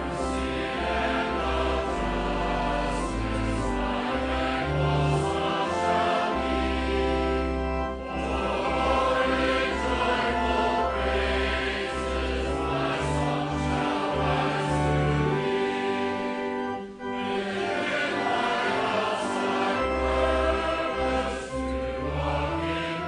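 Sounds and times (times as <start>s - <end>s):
congregation singing a hymn: 0.0s - 23.0s.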